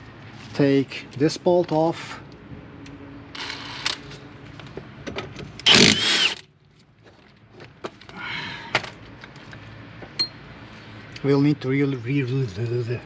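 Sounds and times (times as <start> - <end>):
power tool burst: 5.6 - 6.4.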